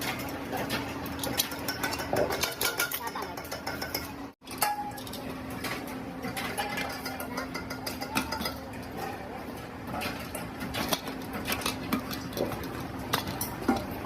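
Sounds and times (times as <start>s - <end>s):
metal parts clinking and clattering: 0.0s - 9.2s.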